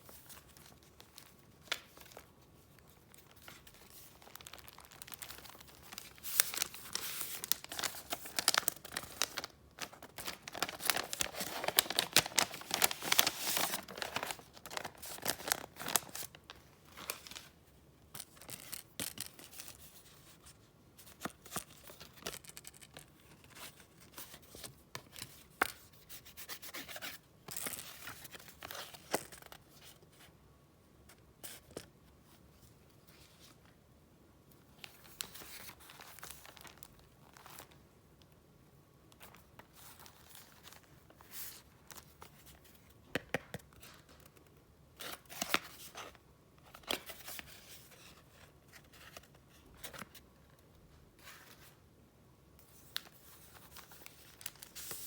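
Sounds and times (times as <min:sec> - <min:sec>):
wrapping paper rustling: 0:00.0 - 0:17.6, 0:34.7 - 0:37.8, 0:52.6 - 0:55.0.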